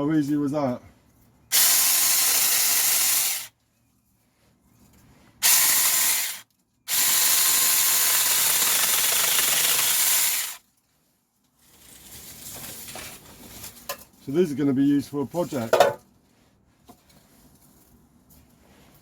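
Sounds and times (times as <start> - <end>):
electric chainsaw cutting branches: 1.5 - 3.5, 5.4 - 10.6.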